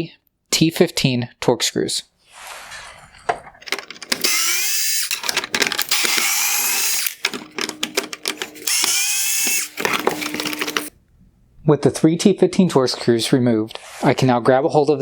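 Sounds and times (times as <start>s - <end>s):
power screwdriver whirring: 3.6s - 10.9s
short clicks: 3.6s - 10.9s.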